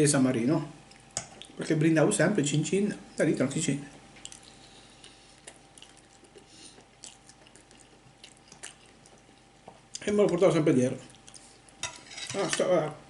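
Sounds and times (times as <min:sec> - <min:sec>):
wet mouth clicks: 0:04.2 - 0:09.4
chewing spaghetti: 0:04.2 - 0:10.4, 0:11.0 - 0:11.8.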